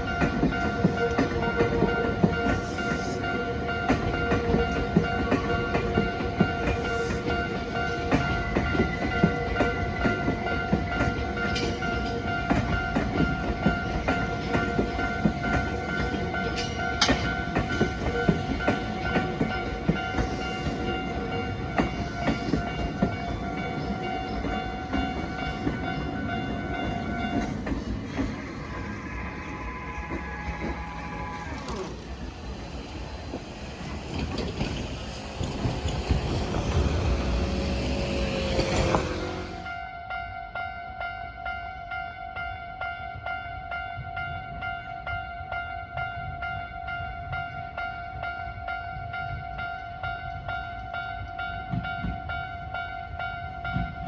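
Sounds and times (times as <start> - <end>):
train wheels clacking over rails: 0.0 - 39.8.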